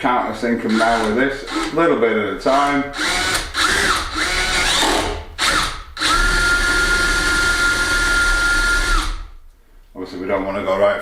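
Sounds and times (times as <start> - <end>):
power drill motor whirring: 0.7 - 1.8, 2.5 - 9.3.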